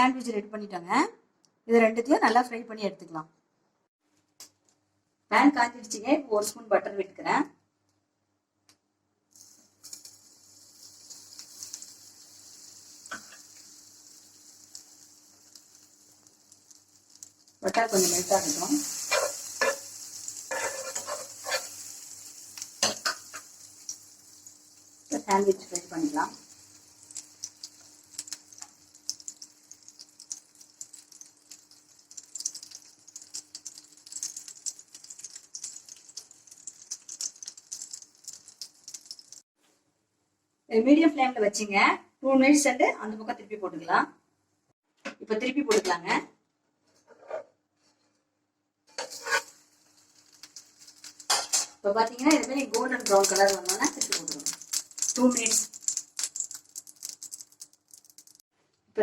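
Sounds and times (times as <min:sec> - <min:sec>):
butter sizzling in a pan: 0:09.3 - 0:39.5, 0:48.9 - 0:58.5.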